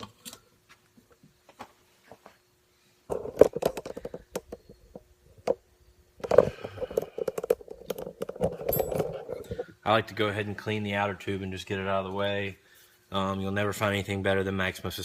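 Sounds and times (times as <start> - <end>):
fork parts clicking and rattling: 6.2 - 9.6.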